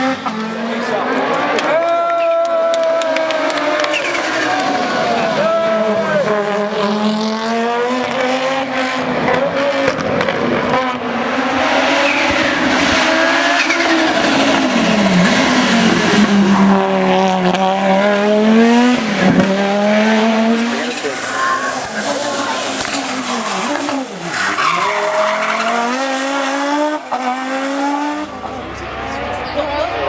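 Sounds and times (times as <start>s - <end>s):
rally car engine at high revs: 0.0s - 30.0s
tyre squeal: 20.6s - 27.3s.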